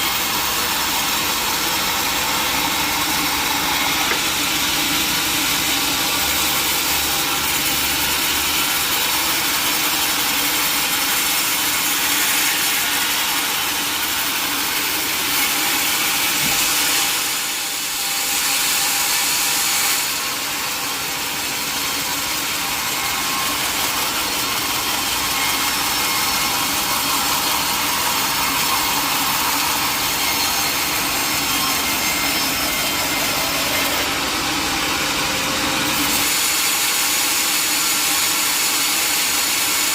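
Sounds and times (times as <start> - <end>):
sawmill blade cutting log: 0.0 - 39.9.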